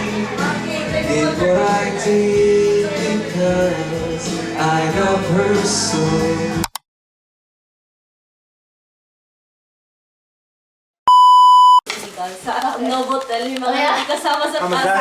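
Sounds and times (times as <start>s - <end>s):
guitar playing: 0.0s - 5.6s
person singing: 0.0s - 6.6s.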